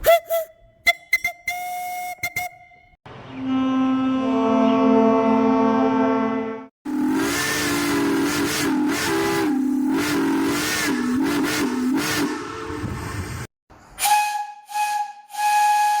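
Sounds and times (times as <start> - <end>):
steam whistle blowing: 0.0 - 13.0, 14.0 - 16.0.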